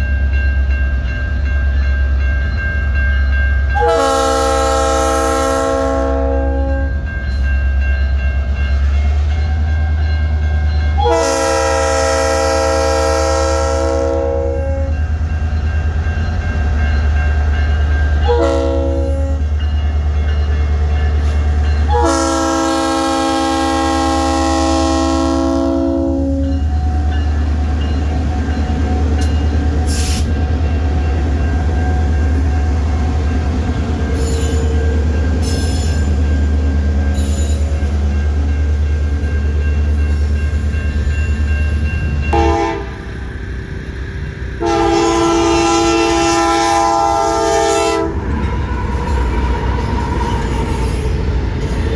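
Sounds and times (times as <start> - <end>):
train rumbling: 0.0 - 51.9
locomotive air horn blasts: 3.8 - 7.0, 11.0 - 15.0, 18.2 - 19.4, 21.9 - 26.5, 42.3 - 43.1, 44.6 - 48.2.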